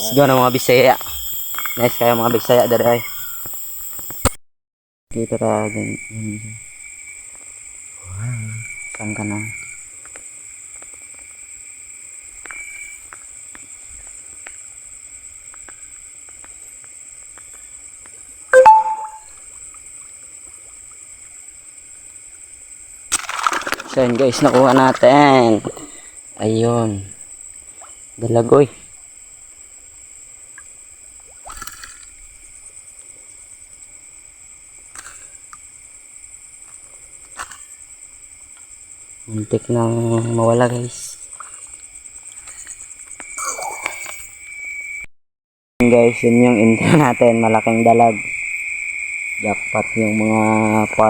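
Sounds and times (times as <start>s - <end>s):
crickets trilling: 0.0s - 4.3s, 5.2s - 45.1s, 45.8s - 51.0s
brief noise: 18.6s - 19.3s.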